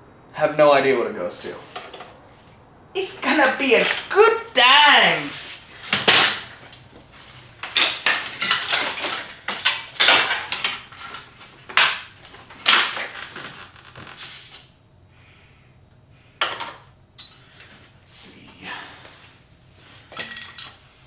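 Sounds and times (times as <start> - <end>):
tools and metal parts clinking: 5.1 - 13.1, 20.0 - 20.8.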